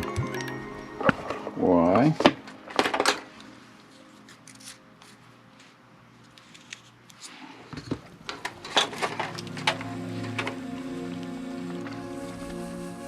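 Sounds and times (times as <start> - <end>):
background music: 0.0 - 5.1, 8.2 - 13.0.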